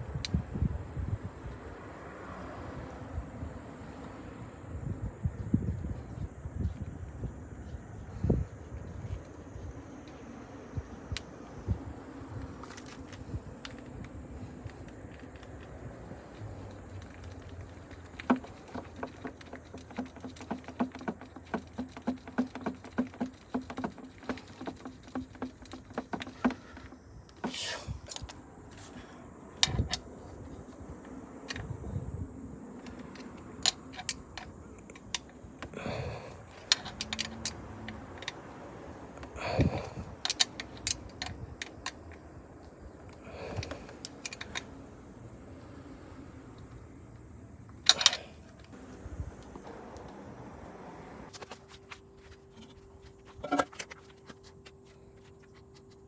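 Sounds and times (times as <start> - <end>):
tool clinks and knocks: 16.9 - 28.4, 47.8 - 48.5, 51.3 - 56.0.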